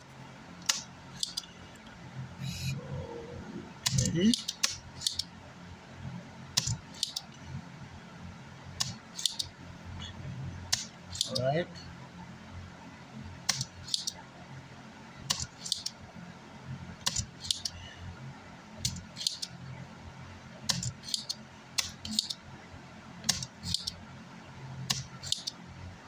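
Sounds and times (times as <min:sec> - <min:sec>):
low steady hum: 0:00.0 - 0:26.0
desoldering pump clicking: 0:00.6 - 0:01.9.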